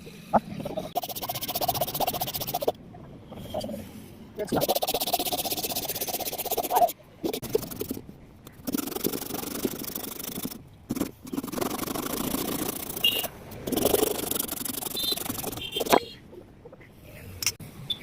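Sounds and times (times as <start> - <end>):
scraping on coconut shell: 0.9 - 2.7, 4.6 - 16.0.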